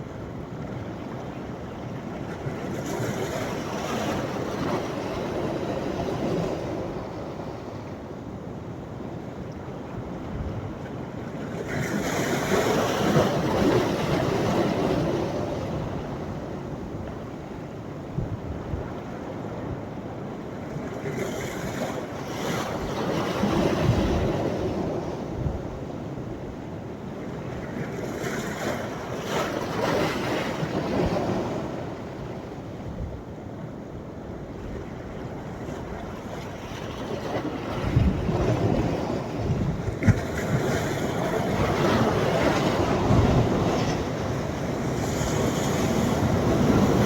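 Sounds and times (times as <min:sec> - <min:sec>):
waves breaking on sandy beach: 0:34.8 - 0:47.0.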